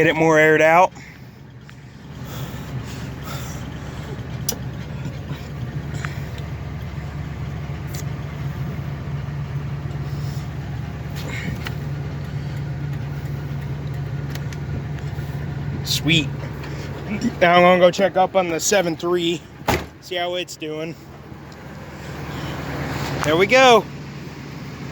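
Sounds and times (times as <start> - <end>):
engine idling: 0.0 - 24.9.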